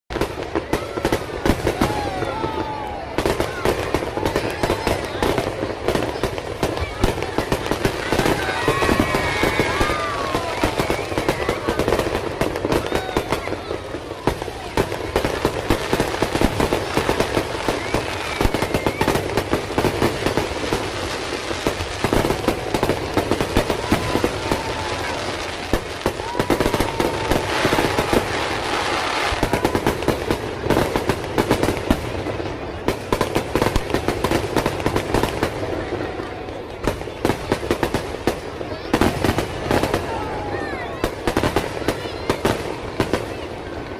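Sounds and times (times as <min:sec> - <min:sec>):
fireworks crackling and banging: 0:00.1 - 0:43.9.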